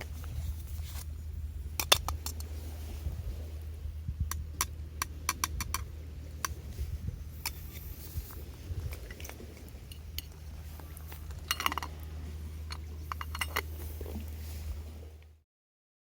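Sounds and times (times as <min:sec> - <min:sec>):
low steady rumble: 0:00.0 - 0:15.4
sharp clicks and ticks: 0:04.3 - 0:06.6.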